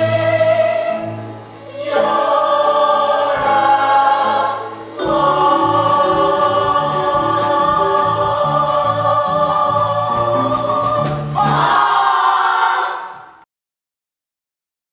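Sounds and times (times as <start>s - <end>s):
group of singers holding chords: 0.0s - 13.4s
instrumental backing with bass line: 3.3s - 11.8s.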